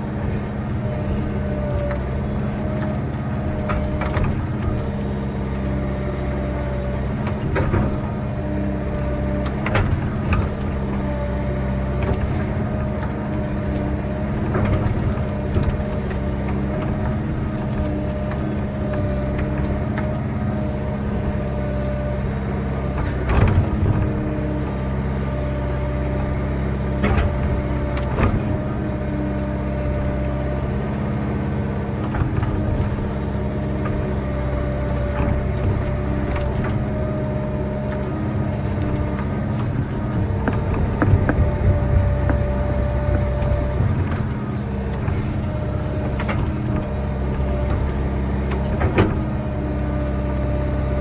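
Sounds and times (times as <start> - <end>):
diesel engine running: 0.0 - 51.0
machine clanks and knocks: 38.5 - 51.0.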